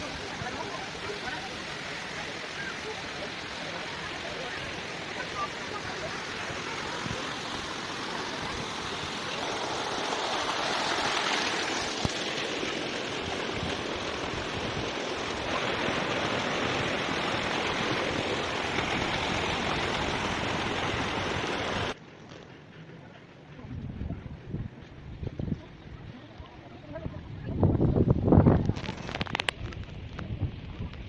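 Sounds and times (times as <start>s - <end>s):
waterfall rushing: 0.0s - 22.0s.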